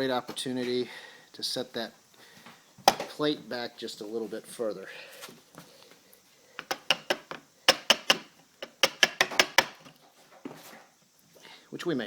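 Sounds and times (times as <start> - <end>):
hand tools clicking on door latch: 6.6 - 9.9.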